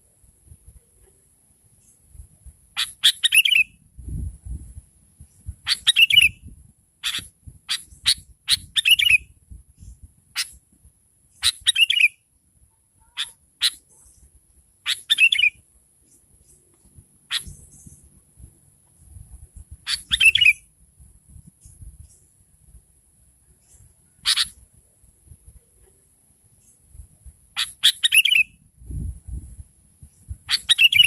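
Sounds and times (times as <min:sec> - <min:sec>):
bulbul calling: 0:02.8 - 0:03.7, 0:05.6 - 0:09.3, 0:11.4 - 0:12.2, 0:14.8 - 0:15.6, 0:17.3 - 0:18.1, 0:19.8 - 0:20.7, 0:23.6 - 0:24.6, 0:27.6 - 0:28.5, 0:30.3 - 0:31.0.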